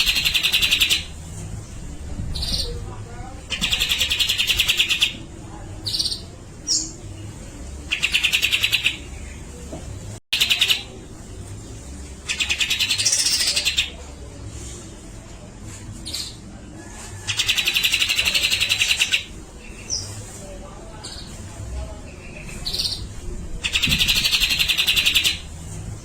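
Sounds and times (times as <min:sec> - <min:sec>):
bird rattling chatters: 0:00.0 - 0:01.1, 0:03.5 - 0:05.2, 0:23.6 - 0:25.4.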